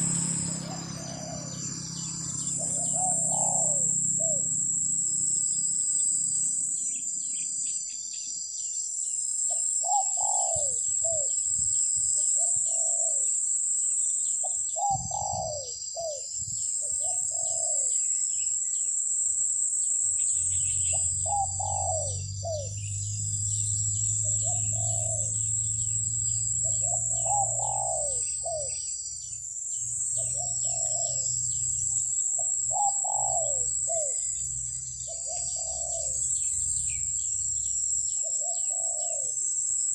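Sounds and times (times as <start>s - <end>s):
doves cooing: 0.0s - 6.7s, 9.5s - 11.4s, 12.2s - 13.3s, 14.4s - 18.1s, 20.8s - 29.0s, 30.1s - 34.4s, 35.0s - 37.0s, 38.2s - 39.6s
insects droning: 0.0s - 39.9s.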